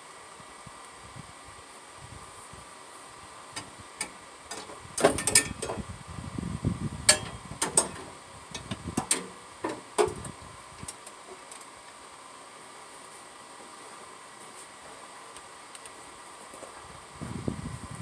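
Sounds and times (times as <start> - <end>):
metallic clicks and clanks of tools: 3.6 - 5.8, 7.1 - 11.7
short metal rattle: 4.5 - 5.8.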